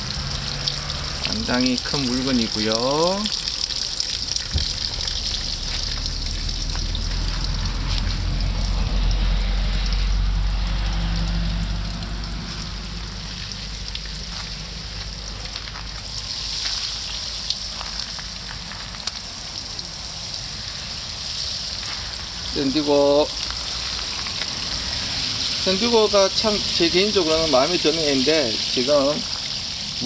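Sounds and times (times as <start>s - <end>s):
water spraying from a hose: 0.0s - 30.0s
low rumble: 4.3s - 16.3s.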